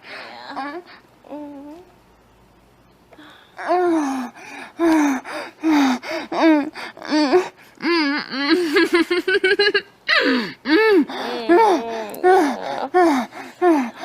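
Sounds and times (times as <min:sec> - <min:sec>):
person moaning and gasping: 0:10.1 - 0:14.0.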